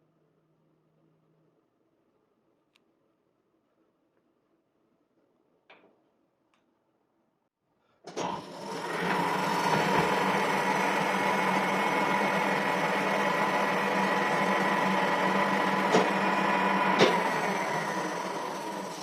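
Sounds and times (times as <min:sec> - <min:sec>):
metal lathe whine and hum: 0:08.2 - 0:19.0.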